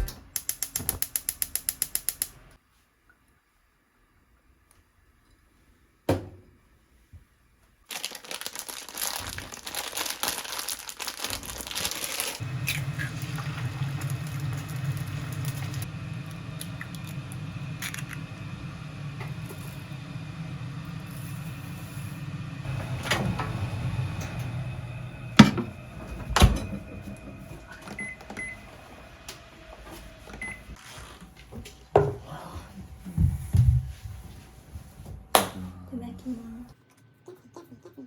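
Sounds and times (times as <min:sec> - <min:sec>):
appliance humming: 0:11.0 - 0:38.0.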